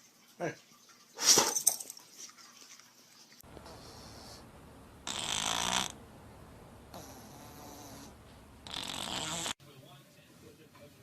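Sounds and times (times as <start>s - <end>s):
soft snoring breath: 3.6s - 6.0s, 6.9s - 9.6s.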